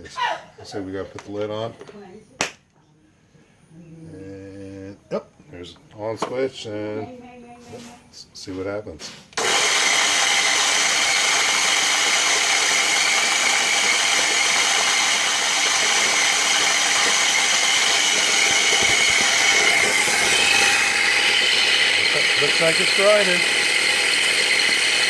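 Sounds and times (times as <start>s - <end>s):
coffee grinder whirring: 9.4s - 25.0s.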